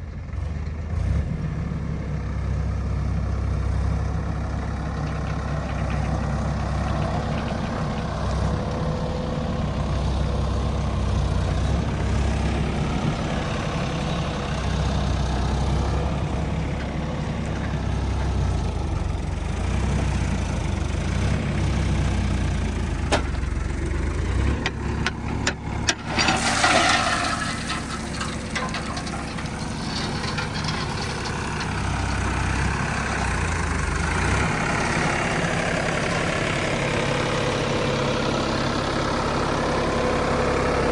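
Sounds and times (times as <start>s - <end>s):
diesel engine running: 0.0s - 40.9s
loud rushing scraping noise: 26.0s - 32.4s.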